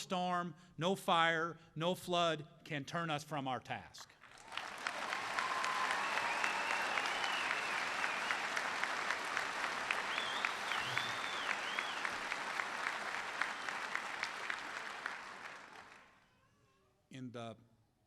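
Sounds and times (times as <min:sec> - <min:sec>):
audience applauding: 0:04.3 - 0:16.1.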